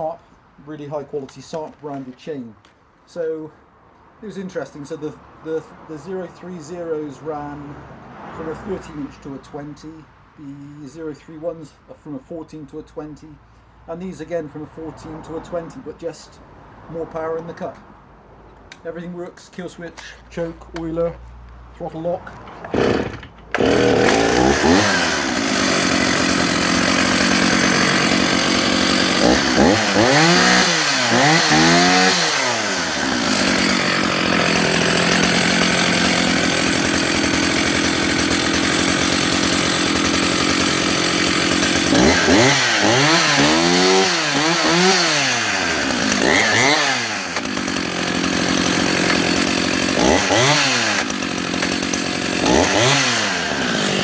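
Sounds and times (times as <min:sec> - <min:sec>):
chainsaw idling and revving: 0:04.8 - 0:11.0, 0:14.2 - 0:16.2, 0:21.8 - 0:54.0.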